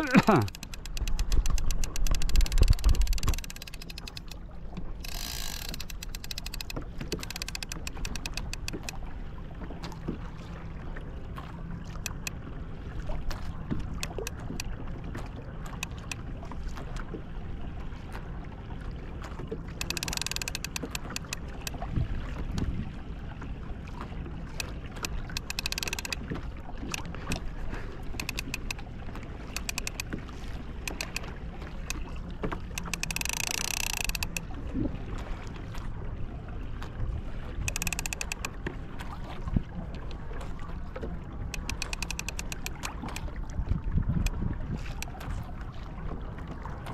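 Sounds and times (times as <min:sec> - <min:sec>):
small knocks and clicks: 0:00.0 - 0:09.0, 0:11.9 - 0:12.4, 0:13.3 - 0:14.7, 0:15.7 - 0:16.2, 0:19.7 - 0:21.8, 0:24.6 - 0:27.5, 0:28.1 - 0:28.8, 0:29.5 - 0:30.2, 0:30.8 - 0:34.5, 0:37.6 - 0:38.6, 0:41.5 - 0:43.3
water lapping against hull: 0:00.0 - 0:46.9
wind on microphone: 0:01.0 - 0:03.6, 0:21.6 - 0:23.0, 0:42.9 - 0:45.6.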